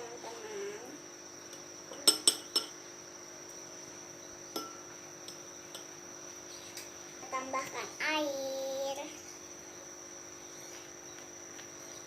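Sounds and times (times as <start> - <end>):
metal spoon clinking against glass: 4.6 - 5.8.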